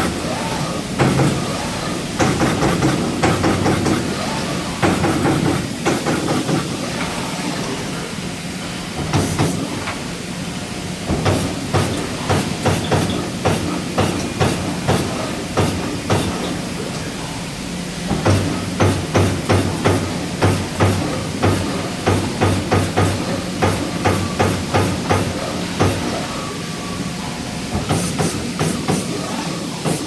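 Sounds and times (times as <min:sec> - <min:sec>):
steady machine hum: 0:00.0 - 0:30.0.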